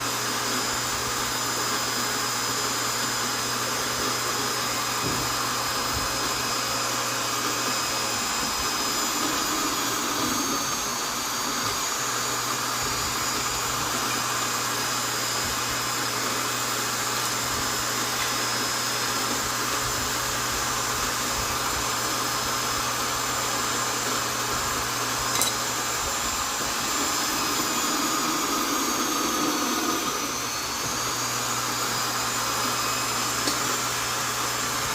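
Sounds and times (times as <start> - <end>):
electric drill whine: 0.0 - 34.9.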